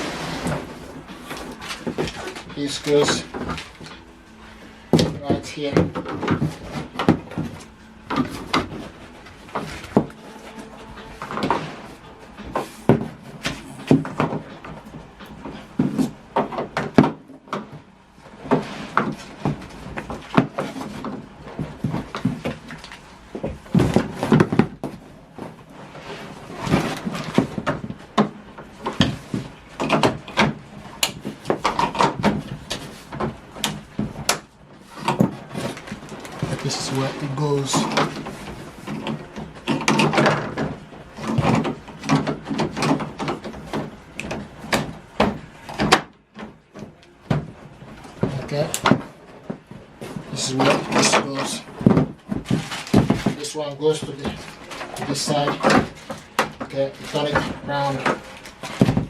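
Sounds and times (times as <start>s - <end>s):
packaging rustling: 0.0s - 17.5s, 18.3s - 59.0s
plastic parts knocking and clicking: 18.4s - 25.8s, 26.5s - 59.0s.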